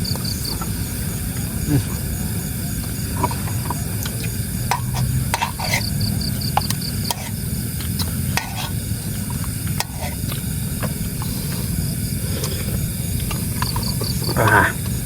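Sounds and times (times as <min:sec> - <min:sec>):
spoon scraping a bowl: 0:04.7 - 0:06.0, 0:07.0 - 0:07.4, 0:08.3 - 0:10.4.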